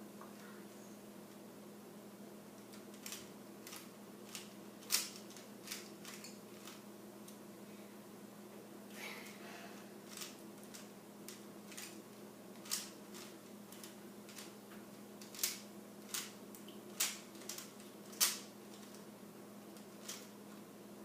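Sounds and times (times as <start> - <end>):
faint low hum: 0.0 - 21.0
plastic puzzle cube clicking: 2.7 - 6.8, 15.2 - 16.3, 17.0 - 18.9.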